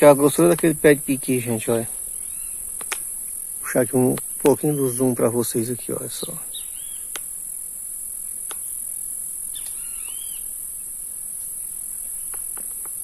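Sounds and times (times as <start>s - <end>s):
high-pitched insect drone: 0.0s - 13.0s
bird chirps: 2.0s - 2.7s, 4.4s - 7.1s, 9.5s - 10.6s.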